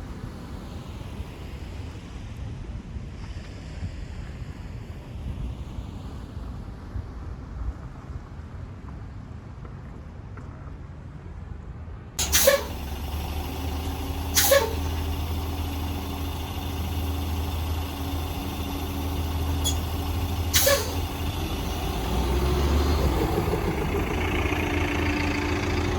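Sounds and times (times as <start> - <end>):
vehicle engine rumbling: 12.2 - 25.9.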